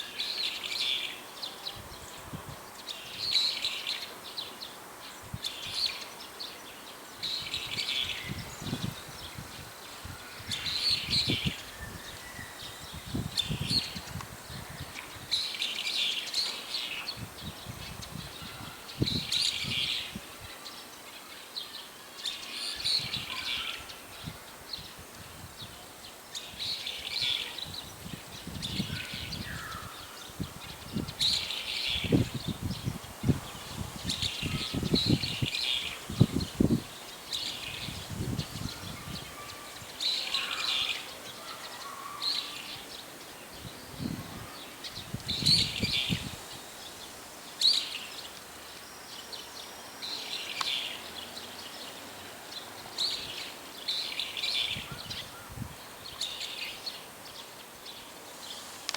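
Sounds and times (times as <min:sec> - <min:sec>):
birds calling high-pitched: 0:26.3 - 0:52.0.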